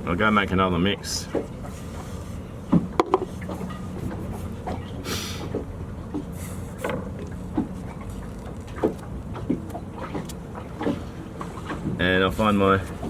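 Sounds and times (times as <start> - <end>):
light knocks and clicks: 1.2 - 2.1, 2.7 - 12.0.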